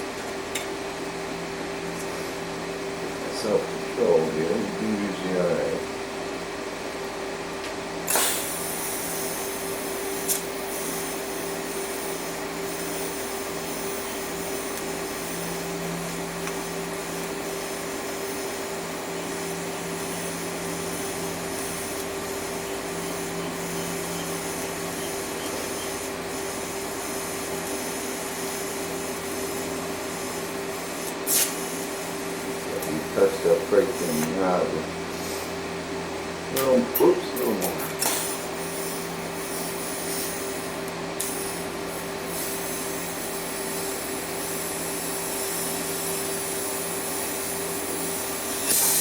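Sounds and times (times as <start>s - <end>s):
welder electric hiss and hum: 8.0s - 49.0s
sharp welding crack: 31.0s - 31.8s.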